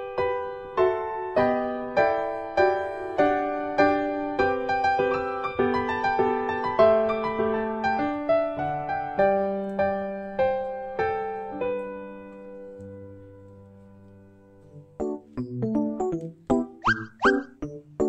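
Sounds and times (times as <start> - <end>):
gentle piano music: 0.0 - 18.0.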